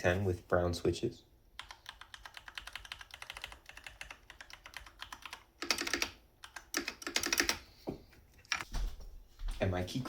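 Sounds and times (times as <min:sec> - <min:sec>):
mechanical keyboard typing: 0:01.6 - 0:07.6.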